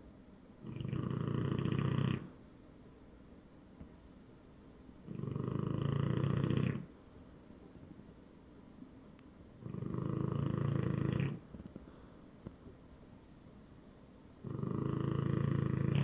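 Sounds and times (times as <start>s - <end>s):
dog snoring: 0.6s - 2.4s, 5.0s - 7.0s, 9.6s - 11.9s, 14.4s - 16.0s.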